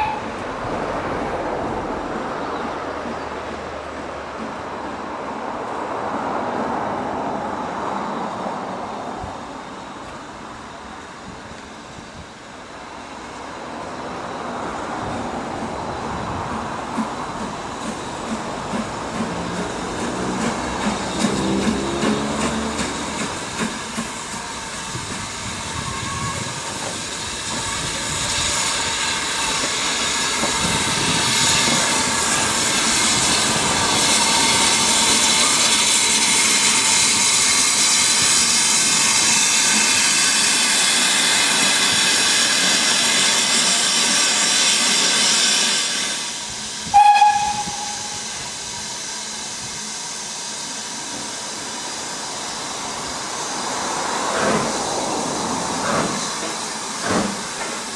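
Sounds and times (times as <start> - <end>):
steam whistle toot: 0.0 - 0.4, 46.8 - 49.0
steam locomotive hissing steam: 0.0 - 57.9.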